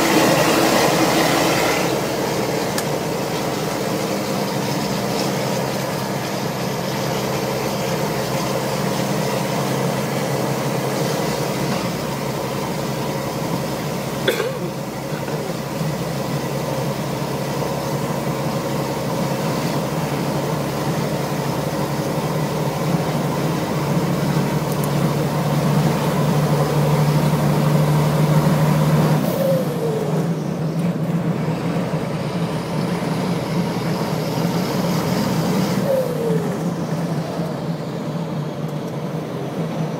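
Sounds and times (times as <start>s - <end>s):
diesel engine hum: 0.0s - 39.9s
turbocharger whistling: 14.8s - 38.8s.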